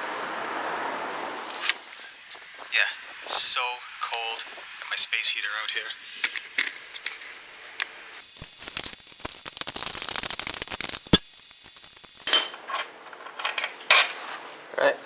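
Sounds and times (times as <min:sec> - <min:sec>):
ratchet wrench clicking: 0:08.4 - 0:12.5
metallic clinks of tools: 0:11.2 - 0:14.0.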